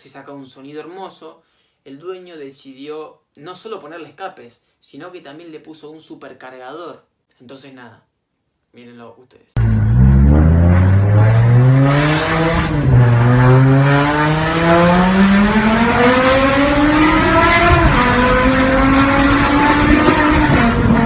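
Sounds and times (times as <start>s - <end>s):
car engine accelerating hard: 9.6s - 21.0s.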